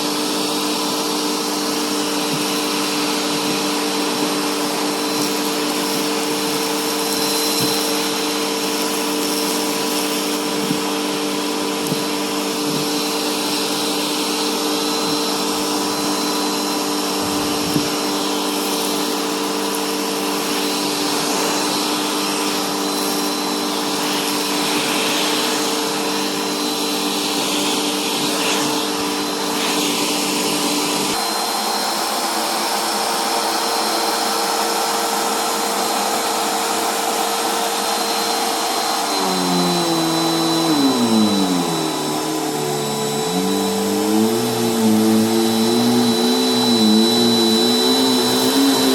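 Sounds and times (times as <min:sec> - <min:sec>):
vacuum cleaner running on carpet: 0:00.0 - 0:48.9.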